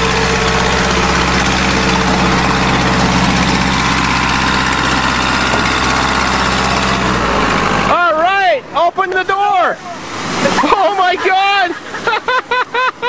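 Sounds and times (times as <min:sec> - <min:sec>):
vehicle engine running: 0:00.0 - 0:08.8.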